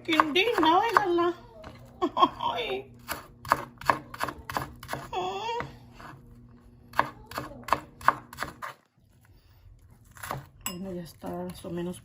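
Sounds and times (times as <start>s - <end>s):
knife chopping onion on board: 0.0s - 1.3s, 3.0s - 6.2s, 6.9s - 8.8s, 10.2s - 10.6s.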